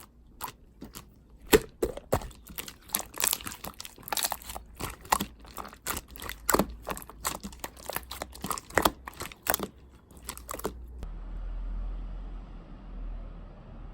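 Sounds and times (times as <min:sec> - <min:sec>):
irregular crinkling: 0:00.0 - 0:11.0.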